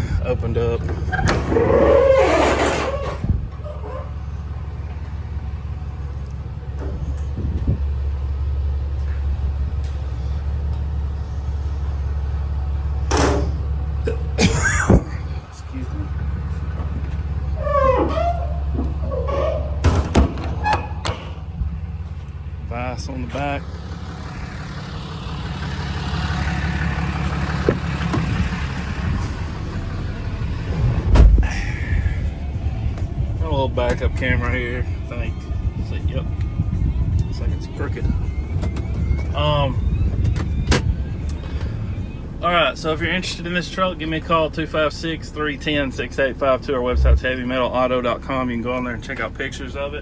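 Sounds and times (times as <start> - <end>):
diesel truck engine idling: 0.0 - 50.0
heavy thump: 30.7 - 31.7.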